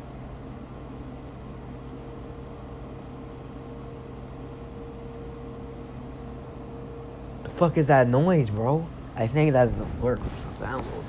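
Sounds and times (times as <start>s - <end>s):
low hum: 8.8s - 11.0s.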